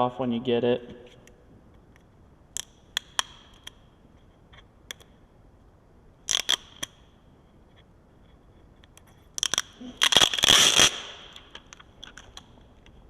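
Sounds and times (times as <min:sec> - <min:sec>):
plastic film peeling crackles: 0:06.3 - 0:06.9, 0:09.0 - 0:13.0.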